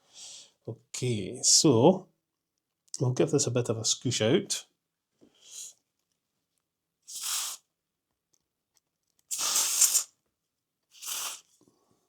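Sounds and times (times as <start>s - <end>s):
aerosol spray can hissing: 7.1s - 7.6s, 9.3s - 10.1s, 11.0s - 11.5s.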